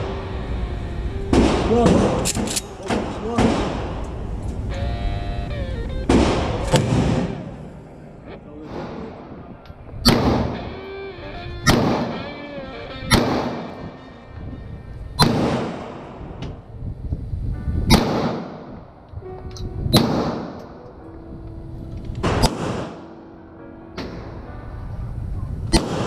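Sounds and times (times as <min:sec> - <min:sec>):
gunshots with ringing echo: 0:01.3 - 0:04.0, 0:06.1 - 0:07.8, 0:10.0 - 0:10.8, 0:11.6 - 0:14.0, 0:15.2 - 0:16.4, 0:17.9 - 0:19.0, 0:19.9 - 0:20.8, 0:22.2 - 0:23.3, 0:25.7 - 0:26.0.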